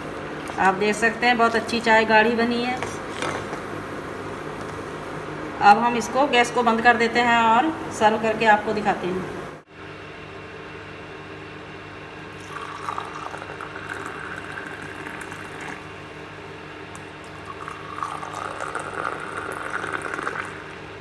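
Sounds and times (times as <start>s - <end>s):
steady low hum: 0.0s - 21.0s
tea pouring into cups: 12.3s - 16.4s, 17.0s - 20.9s.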